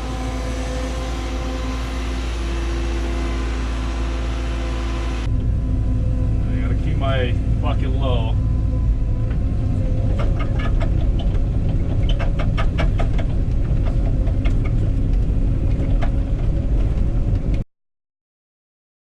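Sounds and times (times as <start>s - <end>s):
excavator diesel engine running: 0.0s - 17.6s
sharp clicks and knocks: 10.1s - 17.6s.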